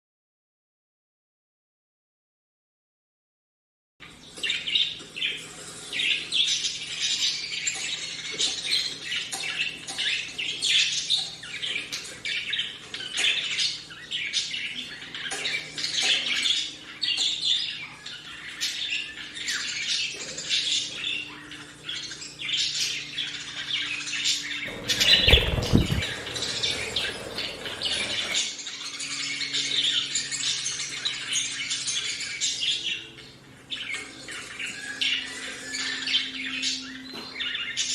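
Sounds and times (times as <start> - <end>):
budgerigars chirping and squawking: 4.0 - 37.9
loud rushing noise: 24.7 - 28.4.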